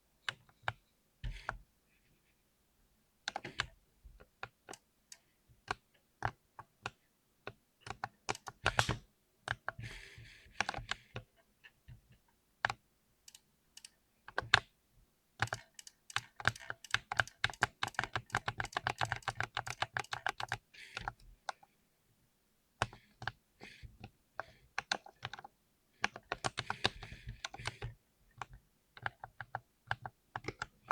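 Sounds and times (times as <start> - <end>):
mechanical keyboard typing: 7.9 - 9.0, 15.4 - 21.2.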